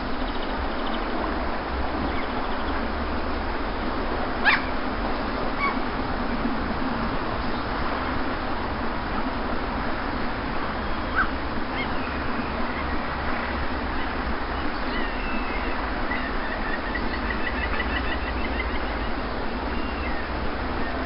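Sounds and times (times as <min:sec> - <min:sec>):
sea surf on a beach: 0:00.0 - 0:21.0
birds calling faintly: 0:10.6 - 0:21.0.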